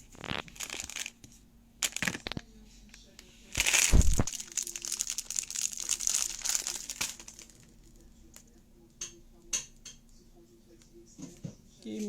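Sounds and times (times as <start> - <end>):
packaging crinkling: 0.0 - 2.5, 3.4 - 8.6.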